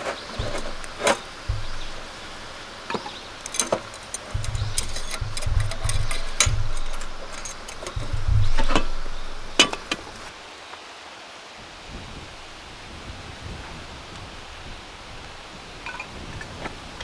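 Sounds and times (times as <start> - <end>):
low bumps: 0.0 - 10.3
metallic clinks and knocks: 0.0 - 10.3
soft steady hiss: 0.0 - 10.9
sharp click: 0.3 - 10.3.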